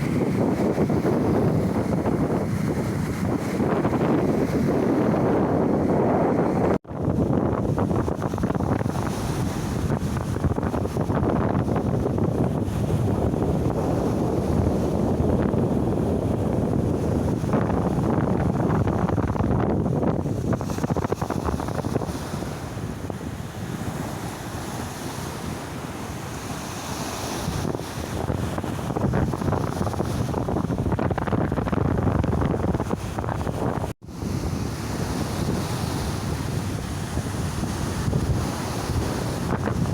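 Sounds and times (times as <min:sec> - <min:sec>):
sea surf washing ashore: 0:00.0 - 0:39.9
wind buffeting microphone: 0:00.0 - 0:39.9.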